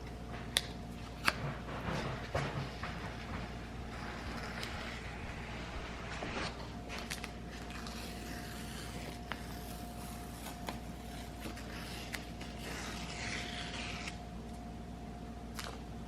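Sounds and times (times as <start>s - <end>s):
razor blade scraping epoxy: 3.9s - 14.2s.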